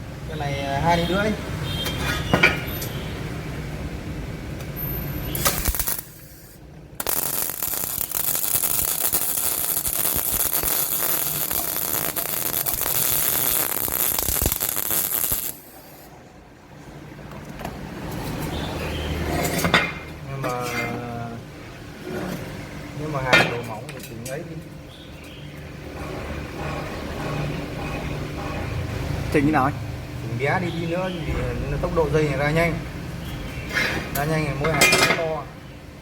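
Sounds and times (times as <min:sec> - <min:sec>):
welder arc crackling: 0:04.6 - 0:16.1.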